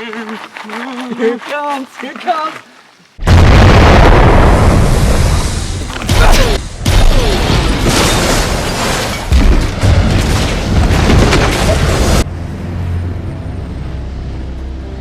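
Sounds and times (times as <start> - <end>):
explosion blasts and rumbling: 3.2 - 12.2.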